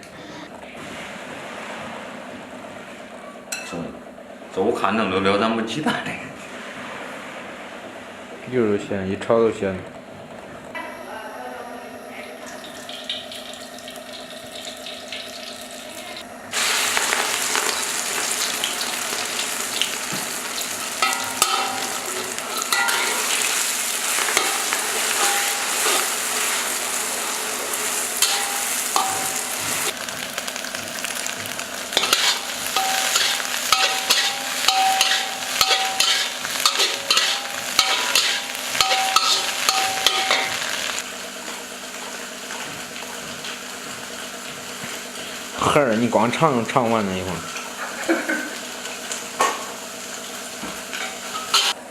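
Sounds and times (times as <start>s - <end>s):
oil sizzling in a pan: 12.3s - 45.7s, 47.1s - 51.8s
spatula scraping a pan: 22.5s - 29.9s, 32.0s - 40.7s, 51.0s - 51.8s.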